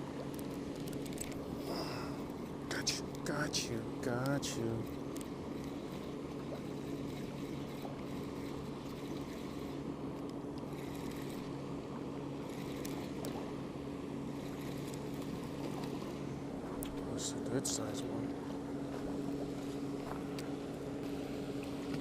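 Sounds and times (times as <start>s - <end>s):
boat motor humming: 0.0s - 22.0s.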